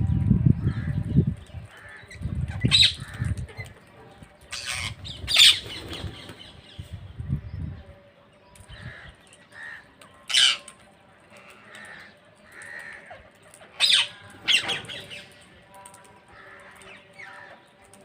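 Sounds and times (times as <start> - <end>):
parrots flapping wings: 4.8 - 6.5.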